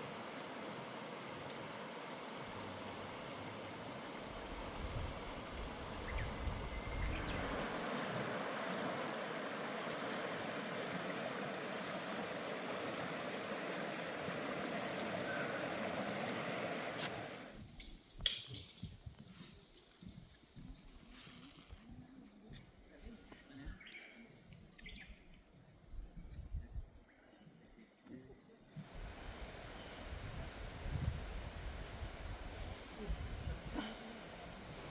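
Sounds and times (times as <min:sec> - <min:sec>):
stream water rushing: 0:00.0 - 0:17.6
faint bird chirps: 0:08.9 - 0:17.4.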